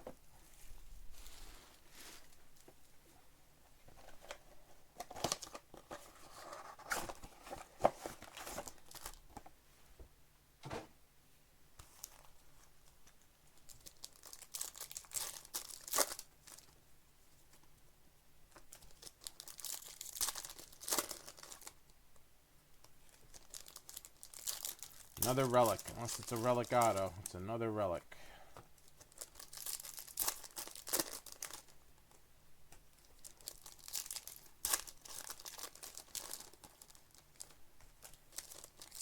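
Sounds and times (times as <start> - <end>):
plastic wrapping tearing and crinkling: 13.6 - 16.7, 18.6 - 21.8, 23.1 - 27.1, 28.8 - 31.7, 33.0 - 39.0.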